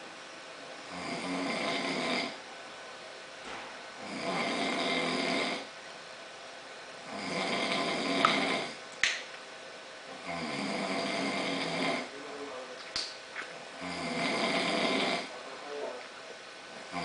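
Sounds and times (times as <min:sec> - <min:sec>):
man snoring loudly: 0:00.9 - 0:02.4, 0:04.0 - 0:05.7, 0:07.0 - 0:08.8, 0:10.2 - 0:12.1, 0:13.8 - 0:15.4.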